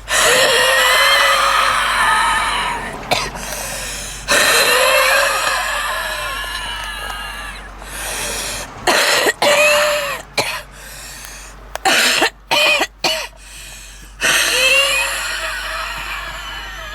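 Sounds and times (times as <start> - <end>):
wheezy whistling breaths: 0.0 - 8.8, 10.6 - 11.7, 13.4 - 16.9
woman coughing: 3.1 - 3.4, 8.9 - 10.6, 11.9 - 13.3.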